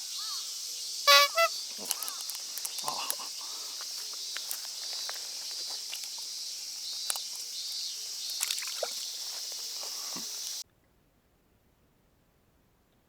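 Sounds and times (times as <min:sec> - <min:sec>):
steady high hiss: 0:00.0 - 0:10.6
small clicks: 0:01.8 - 0:03.2
light water sounds: 0:01.8 - 0:10.6.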